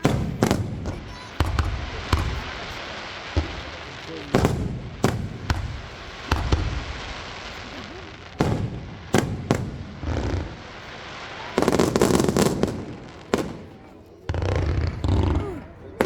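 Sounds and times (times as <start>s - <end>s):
crackling firework salvo: 0.0s - 16.0s.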